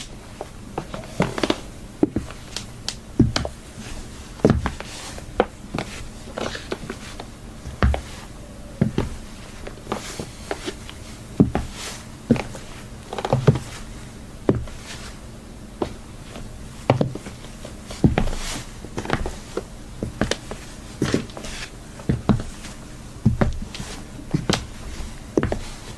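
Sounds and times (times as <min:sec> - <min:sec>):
high heels clicking on hard floor: 0:00.4 - 0:03.6, 0:07.7 - 0:08.2, 0:08.8 - 0:09.2, 0:18.0 - 0:18.4, 0:23.2 - 0:24.7, 0:25.4 - 0:25.7.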